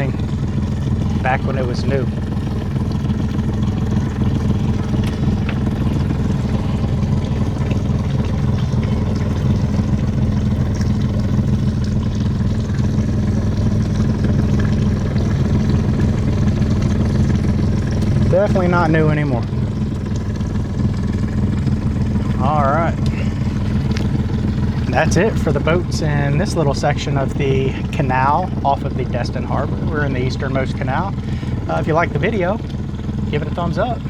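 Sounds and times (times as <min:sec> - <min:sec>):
boat engine droning: 0:00.0 - 0:34.0.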